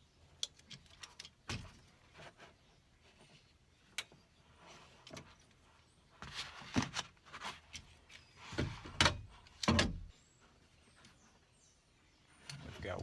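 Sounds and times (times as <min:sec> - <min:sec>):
metal latch knocking and clunking: 0:09.0 - 0:10.1.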